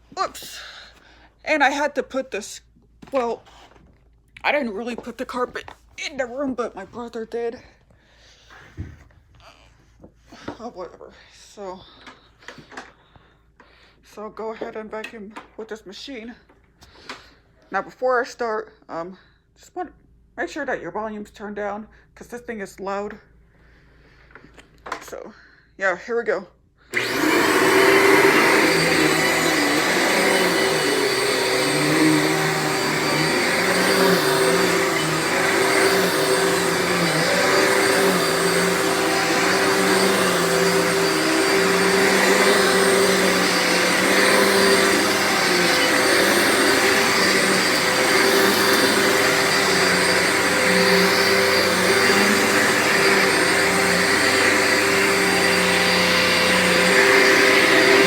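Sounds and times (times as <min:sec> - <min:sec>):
vacuum cleaner running: 0:26.9 - 0:58.0.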